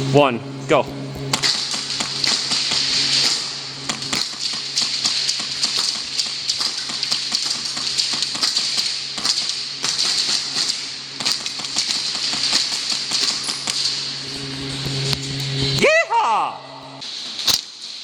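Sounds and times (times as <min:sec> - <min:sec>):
airsoft gun firing: 0:01.3 - 0:14.1.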